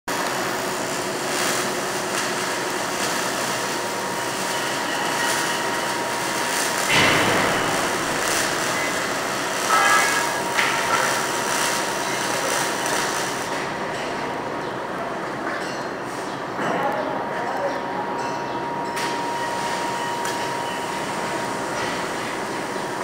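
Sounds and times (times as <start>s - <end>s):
welding arc hissing: 0.1s - 13.9s, 19.0s - 23.0s.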